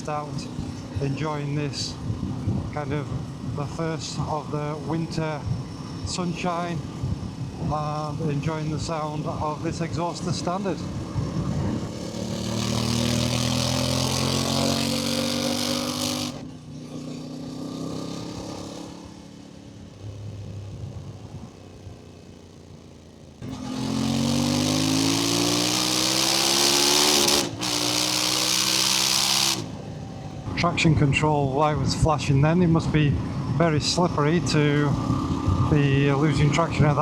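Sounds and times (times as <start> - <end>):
motorcycle engine accelerating: 0.0 - 37.0.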